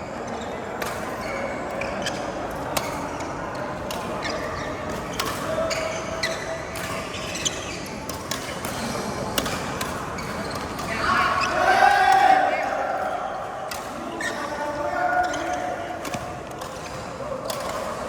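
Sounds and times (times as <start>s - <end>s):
court shoes squeaking: 0.0s - 18.0s
racket hitting shuttlecock: 4.9s - 11.4s, 15.2s - 18.0s.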